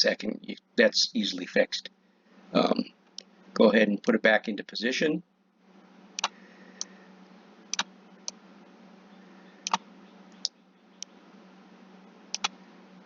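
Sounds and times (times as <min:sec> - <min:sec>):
low electrical hum: 0:00.0 - 0:13.0
computer mouse clicking: 0:06.2 - 0:06.9, 0:09.6 - 0:09.8, 0:12.3 - 0:12.6.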